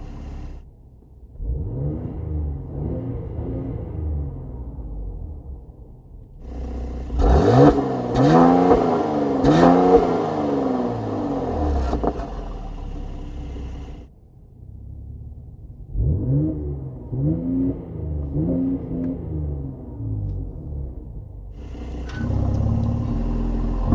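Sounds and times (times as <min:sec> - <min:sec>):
car engine revving: 0:00.0 - 0:00.7, 0:01.3 - 0:14.0, 0:14.6 - 0:23.9
exhaust cracks: 0:00.0 - 0:01.6, 0:05.8 - 0:14.0, 0:17.8 - 0:23.9.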